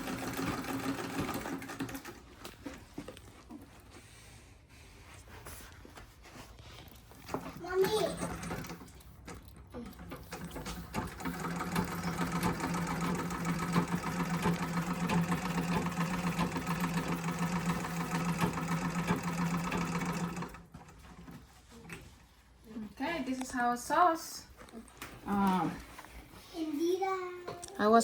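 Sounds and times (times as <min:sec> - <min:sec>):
treadle sewing machine ticking: 0:00.0 - 0:02.2, 0:10.0 - 0:20.7.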